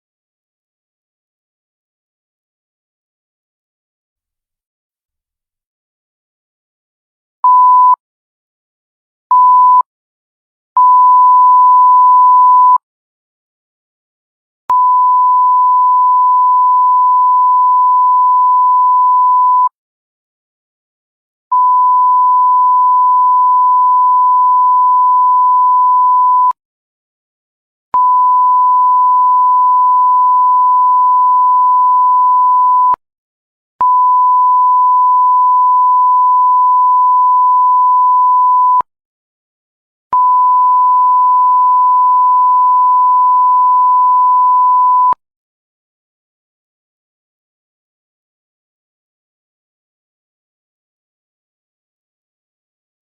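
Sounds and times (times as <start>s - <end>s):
censor bleep tone: 7.4s - 8.0s, 9.3s - 9.9s, 10.8s - 12.8s, 14.7s - 19.7s, 21.5s - 26.6s, 28.0s - 33.0s, 33.8s - 38.9s, 40.2s - 45.2s.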